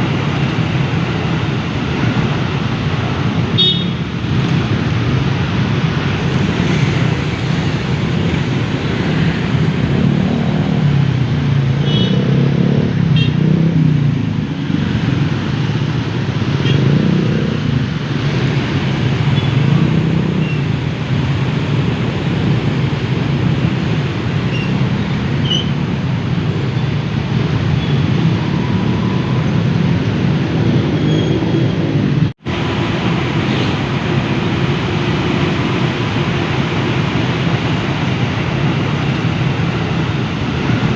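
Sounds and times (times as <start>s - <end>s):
car and motorbike engines: 0.0s - 40.9s.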